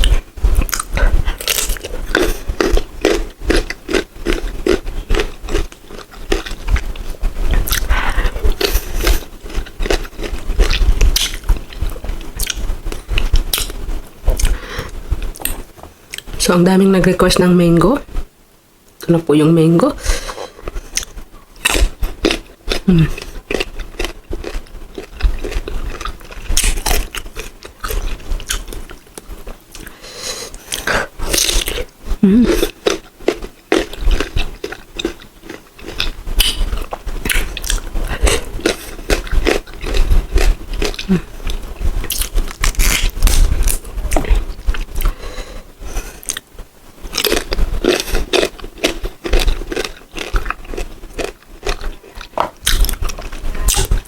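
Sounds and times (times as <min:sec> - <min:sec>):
chewing crisp mango: 0:00.0 - 0:16.3, 0:20.2 - 0:45.3, 0:47.1 - 0:54.0.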